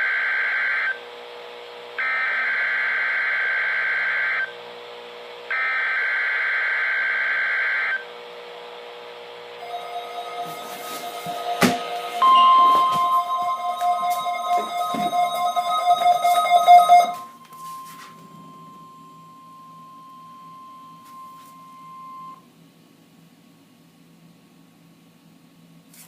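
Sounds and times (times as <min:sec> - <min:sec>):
keyboard music: 0:09.6 - 0:20.0
steady single-pitched beep: 0:09.6 - 0:22.4.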